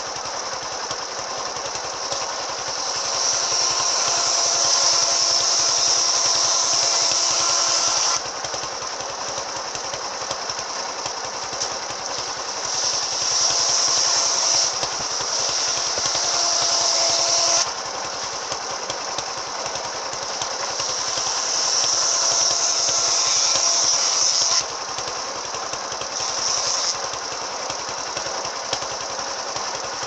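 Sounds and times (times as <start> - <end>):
circular saw cutting wood: 0.0 - 30.0.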